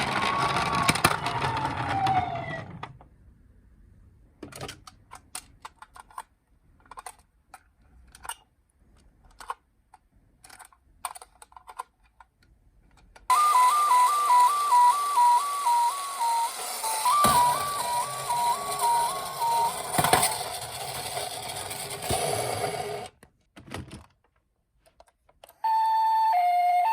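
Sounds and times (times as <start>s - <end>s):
wailing siren: 0.2s - 2.7s, 13.3s - 20.5s, 25.6s - 26.9s
toy electronic two-tone siren: 0.2s - 2.8s, 13.3s - 22.9s, 25.6s - 26.9s
toy car clicks and taps: 4.6s - 8.4s, 9.2s - 23.1s.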